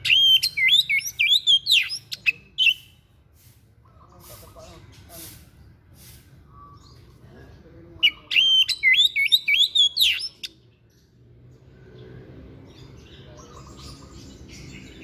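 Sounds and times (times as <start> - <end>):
songbird singing whistled notes: 0.0 - 3.2, 8.0 - 11.2
faint bird chirping: 0.0 - 15.0.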